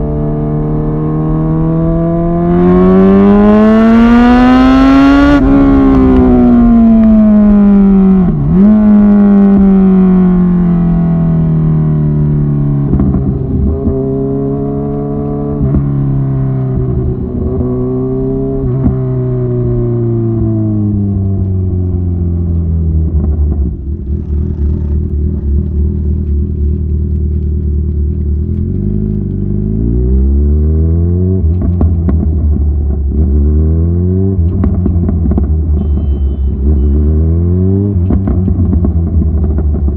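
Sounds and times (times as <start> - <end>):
motorcycle engine on overrun: 0.0 - 39.9
motorcycle engine revs: 0.7 - 10.2, 24.0 - 26.2, 33.2 - 39.8
exhaust crackles: 21.1 - 33.4.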